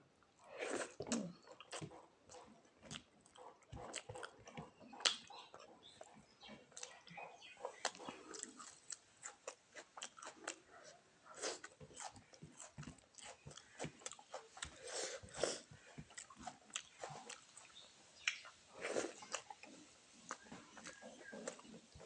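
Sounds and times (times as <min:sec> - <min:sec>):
person chewing crunchy food: 0:00.4 - 0:07.0, 0:07.7 - 0:22.0
wet mouth clicks and smacks: 0:04.1 - 0:05.4, 0:18.2 - 0:18.5.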